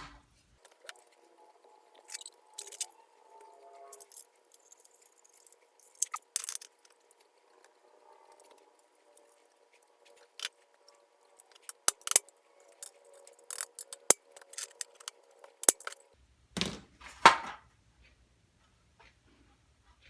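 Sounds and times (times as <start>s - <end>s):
small metal parts clinking: 0.6s - 16.1s.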